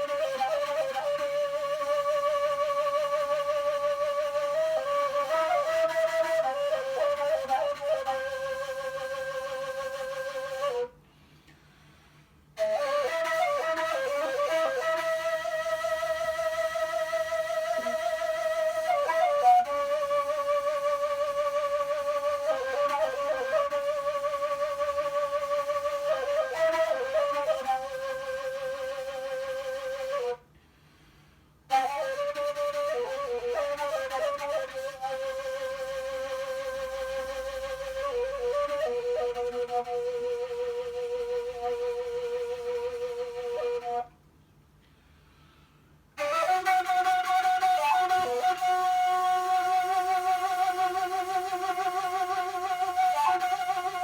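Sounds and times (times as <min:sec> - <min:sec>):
end-blown flute melody: 0:46.2 - 0:54.0.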